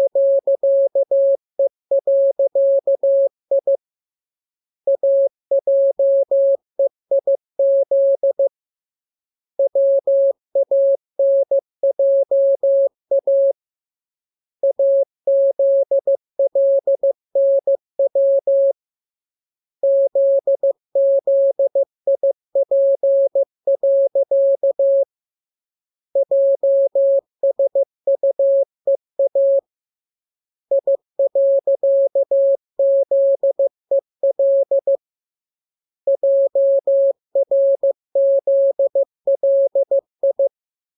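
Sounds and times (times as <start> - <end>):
morse code beeps: 0.0 - 1.4, 2.0 - 3.8, 4.9 - 8.5, 9.6 - 13.5, 14.6 - 18.7, 19.8 - 25.0, 26.2 - 29.6, 30.7 - 35.0, 36.1 - 40.5.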